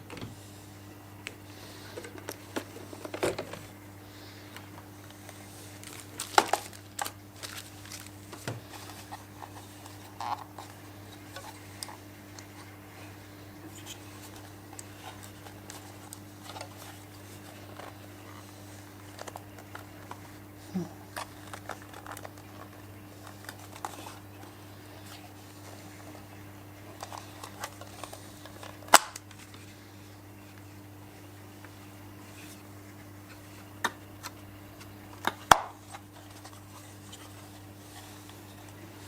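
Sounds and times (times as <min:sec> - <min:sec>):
steady low hum: 0:00.0 - 0:39.0
plastic wrap crinkling: 0:04.6 - 0:12.7, 0:13.6 - 0:29.8.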